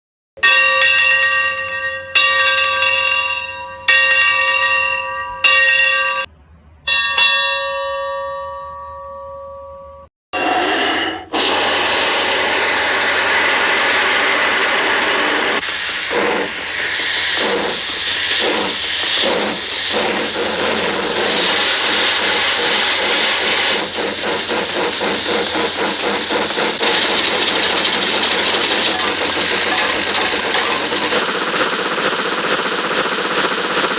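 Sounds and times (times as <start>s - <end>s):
locomotive bell ringing: 0.4s - 10.1s, 24.7s - 31.2s
steam locomotive hissing and chugging: 10.7s - 33.9s.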